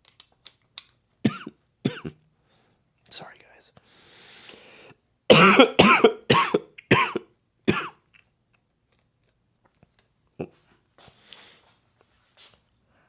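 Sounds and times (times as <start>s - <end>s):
man coughing hard: 1.3s - 2.2s, 5.3s - 8.0s.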